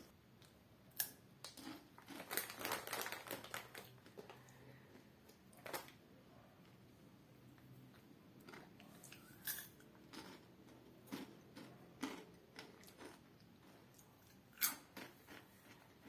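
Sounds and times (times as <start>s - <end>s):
crunching tortilla chips: 1.4s - 4.5s, 8.4s - 16.0s.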